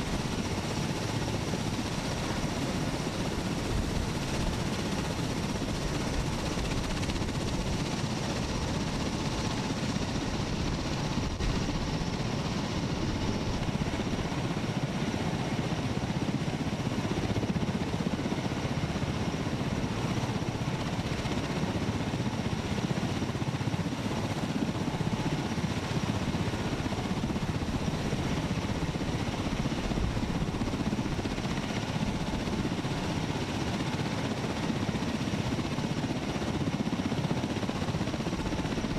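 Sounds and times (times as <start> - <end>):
tiltrotor aircraft rotor drone: 0.0 - 38.9.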